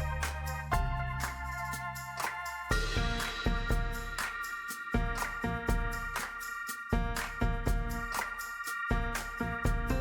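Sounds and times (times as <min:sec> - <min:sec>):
bass line: 0:00.0 - 0:04.2, 0:05.0 - 0:06.2, 0:07.0 - 0:08.2, 0:08.9 - 0:10.0
keyboard chords: 0:00.0 - 0:10.0
steady beat: 0:00.0 - 0:10.0.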